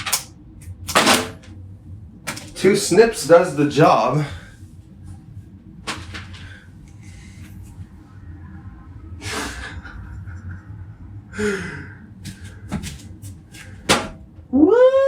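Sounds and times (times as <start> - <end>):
breathy gasps: 11.3 - 12.6.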